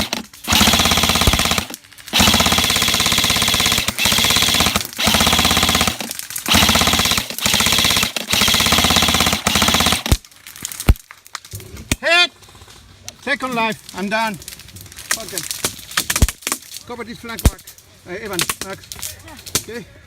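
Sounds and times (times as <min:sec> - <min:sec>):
airsoft gun rapid fire: 0:00.0 - 0:10.2.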